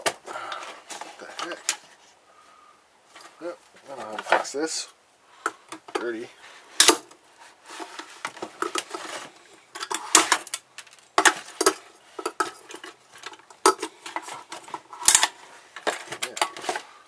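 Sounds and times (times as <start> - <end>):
metal and plastic parts clinking: 8.0 - 16.9.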